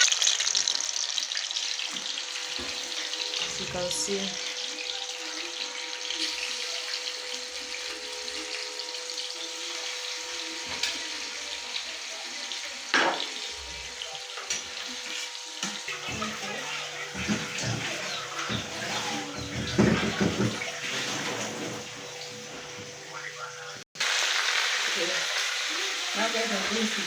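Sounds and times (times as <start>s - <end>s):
chicken sizzling in oil: 0.0s - 27.0s.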